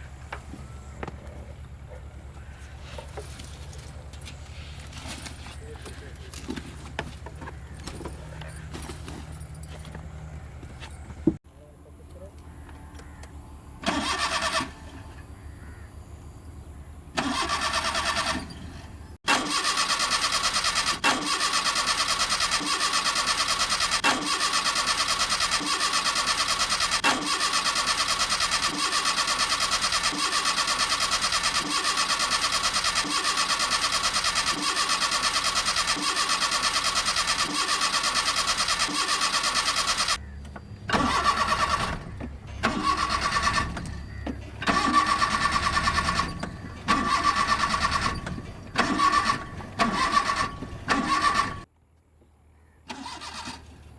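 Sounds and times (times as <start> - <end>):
car engine cranking: 13.8 - 14.8, 17.2 - 51.7, 52.9 - 53.7.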